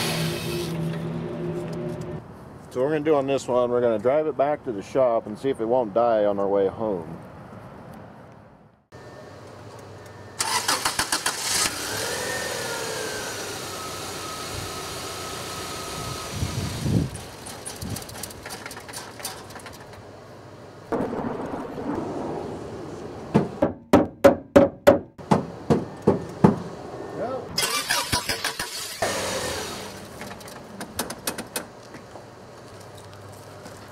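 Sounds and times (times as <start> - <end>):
car starter cranking: 10.4 - 12.0, 27.6 - 30.0
car engine revving and idling: 11.4 - 16.4.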